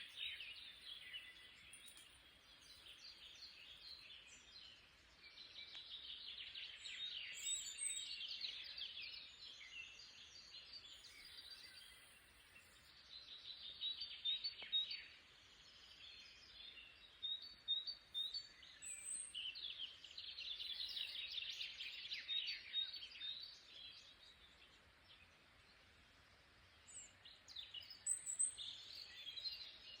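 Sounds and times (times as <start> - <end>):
songbirds chirping and whistling: 0.0 - 30.0.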